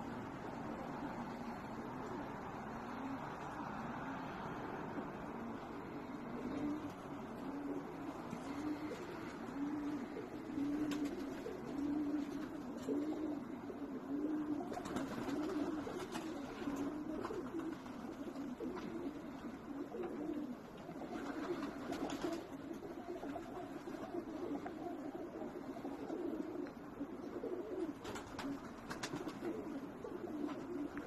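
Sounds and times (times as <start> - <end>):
pigeons cooing: 0.0 - 31.0.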